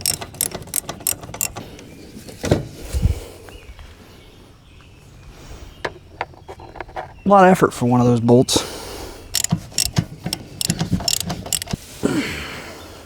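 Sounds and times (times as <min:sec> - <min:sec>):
socket ratchet clicking: 0:00.0 - 0:01.6, 0:09.4 - 0:11.8.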